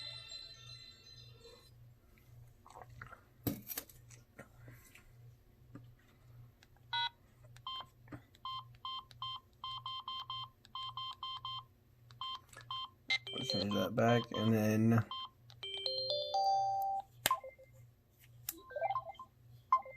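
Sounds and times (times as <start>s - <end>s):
phone keypad beeping: 6.9s - 17.7s.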